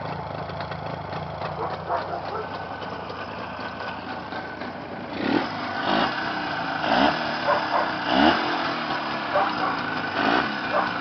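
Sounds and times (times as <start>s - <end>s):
engine revving in blips: 5.1s - 11.0s.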